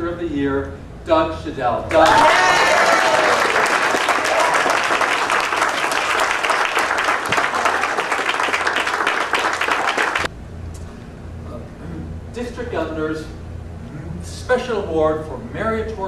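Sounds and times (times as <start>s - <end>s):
audience applauding: 1.9s - 10.3s.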